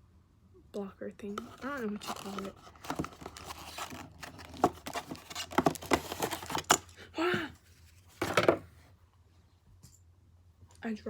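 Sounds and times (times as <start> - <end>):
plastic parts clicking and rustling: 1.3 - 7.0.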